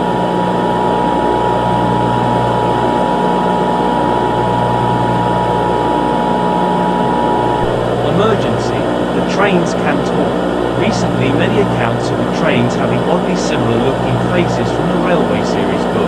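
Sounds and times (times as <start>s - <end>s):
steady hiss and low hum: 7.4s - 16.0s.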